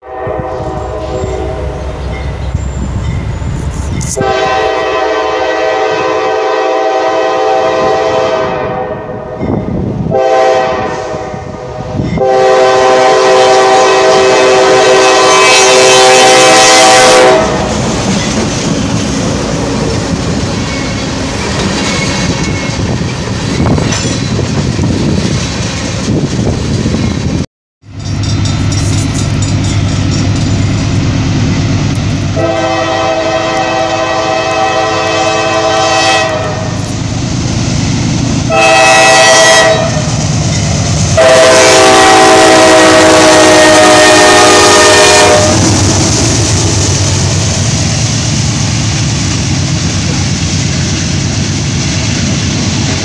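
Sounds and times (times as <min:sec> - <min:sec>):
locomotive air horn blasts: 0:00.0 - 0:01.9, 0:04.0 - 0:09.4, 0:10.1 - 0:17.8, 0:32.3 - 0:36.9, 0:38.5 - 0:40.2, 0:41.2 - 0:46.0
train rumbling past: 0:00.0 - 0:53.0.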